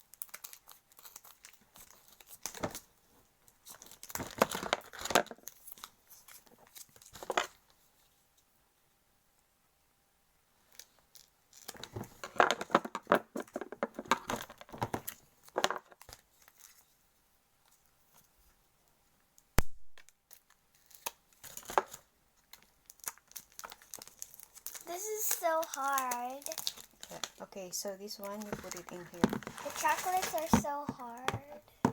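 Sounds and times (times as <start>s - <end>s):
plastic packaging crinkling and tearing: 0.1s - 2.9s, 3.5s - 7.6s, 10.7s - 12.8s, 13.9s - 17.0s, 20.3s - 31.3s.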